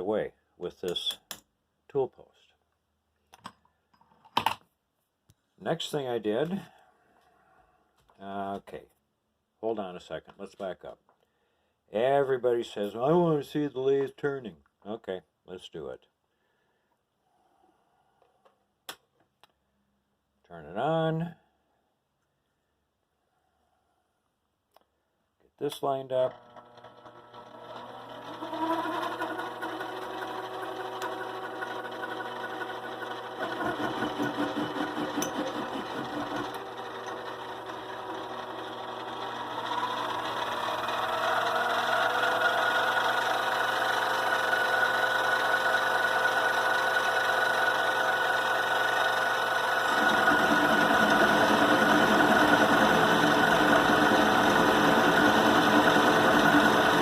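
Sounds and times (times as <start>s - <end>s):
metal lathe whining: 26.3s - 57.0s.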